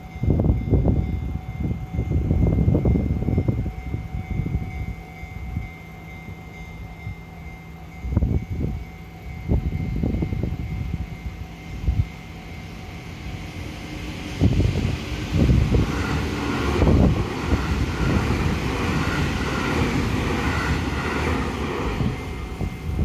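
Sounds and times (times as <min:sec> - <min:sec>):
train rumble: 0:00.0 - 0:23.0
rushing wheel noise: 0:09.5 - 0:23.0.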